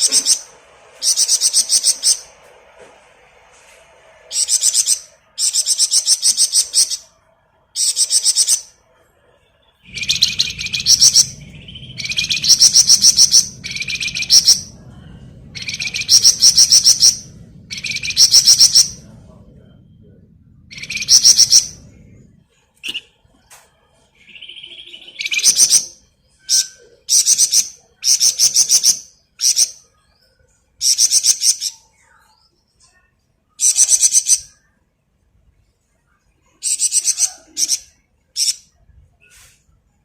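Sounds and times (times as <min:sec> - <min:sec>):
low hum: 0:00.0 - 0:27.0.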